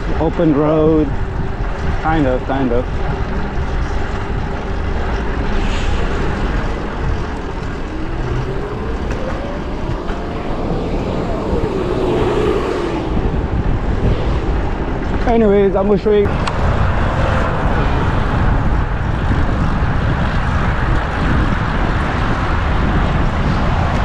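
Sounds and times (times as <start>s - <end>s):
road noise: 0.0s - 24.0s
wind on microphone: 0.0s - 24.0s
motor vehicle passing: 2.9s - 15.2s.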